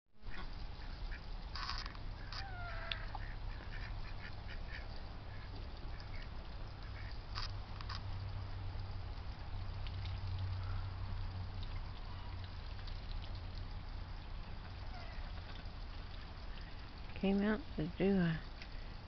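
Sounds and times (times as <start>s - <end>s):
ducks quacking: 2.2s - 7.2s.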